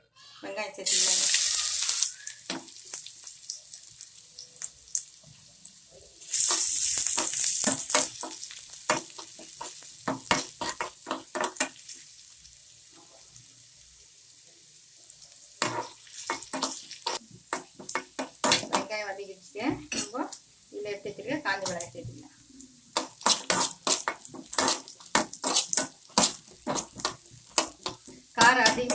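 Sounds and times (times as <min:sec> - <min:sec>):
onion sizzling in hot oil: 0:00.6 - 0:28.9
spatula scraping a pan: 0:06.0 - 0:12.2, 0:15.1 - 0:18.9, 0:23.0 - 0:28.9.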